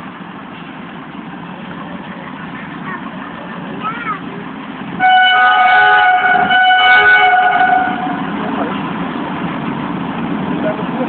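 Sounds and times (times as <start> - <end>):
locomotive horn blast: 5.0 - 8.8.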